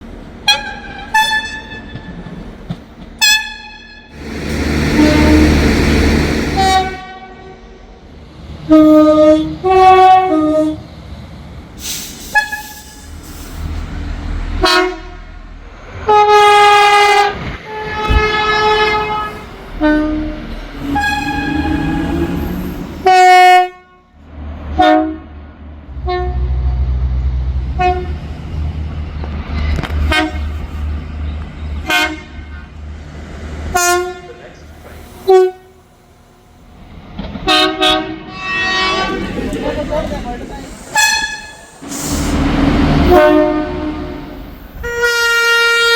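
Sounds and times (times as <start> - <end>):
train horns blasting: 0.4 - 2.2, 3.2 - 7.8, 8.6 - 10.8, 14.6 - 15.3, 16.0 - 27.0, 27.7 - 28.3, 29.8 - 30.7, 31.8 - 32.8, 33.7 - 34.6, 35.2 - 35.8, 37.3 - 39.5, 40.9 - 45.9
low diesel rumble: 4.1 - 7.1.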